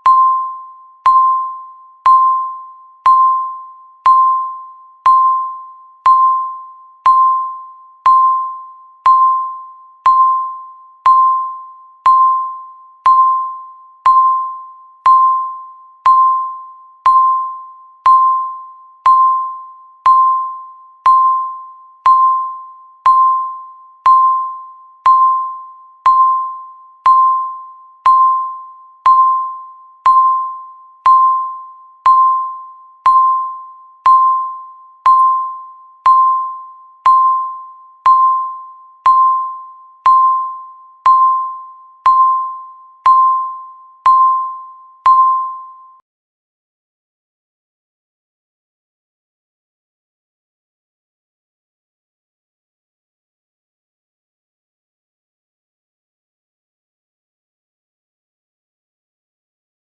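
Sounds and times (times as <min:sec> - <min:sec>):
countdown timer beeps: 0:00.0 - 0:46.0.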